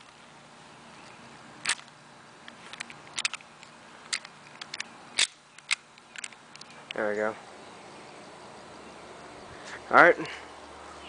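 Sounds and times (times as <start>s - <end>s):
pistol mechanical clicks: 1.6s - 2.0s, 2.7s - 6.8s.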